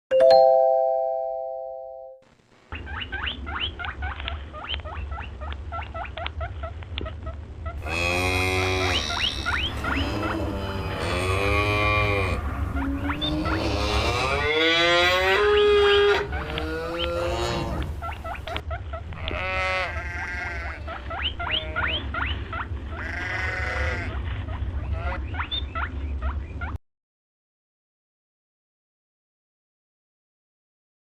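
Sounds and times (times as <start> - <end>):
animal calling: 2.7 - 26.8.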